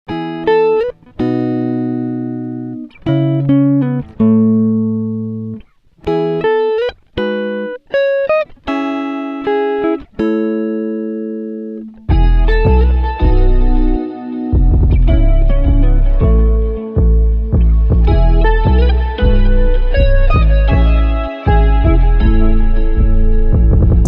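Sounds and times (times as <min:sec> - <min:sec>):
slow plucked chords: 0:11.6 - 0:24.0
deep bass and beat: 0:12.1 - 0:24.0.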